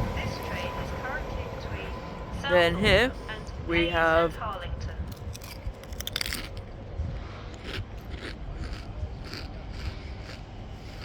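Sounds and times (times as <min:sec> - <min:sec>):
low rumble: 0:00.0 - 0:10.8
crunchy food being chewed: 0:05.1 - 0:11.0.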